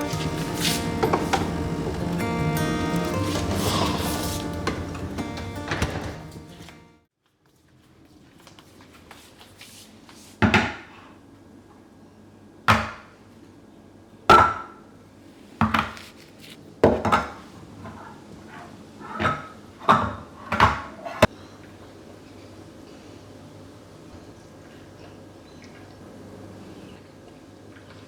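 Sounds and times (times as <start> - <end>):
kitchen knocks and clunks: 2.8 - 6.6, 16.8 - 17.4, 19.1 - 21.0.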